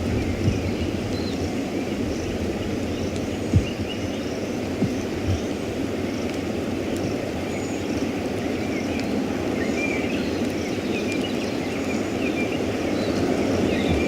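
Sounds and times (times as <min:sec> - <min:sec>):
low rumble of wind: 0:00.0 - 0:14.0
small birds chirping: 0:00.0 - 0:14.0.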